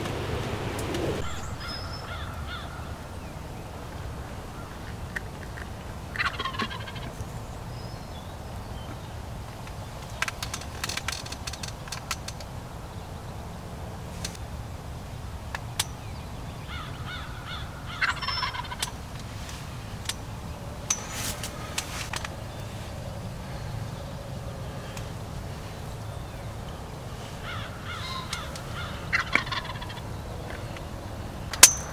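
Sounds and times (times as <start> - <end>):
low wind rumble: 0.0 - 31.9
turkey gobbling: 4.3 - 7.3, 16.7 - 19.6, 27.2 - 30.6.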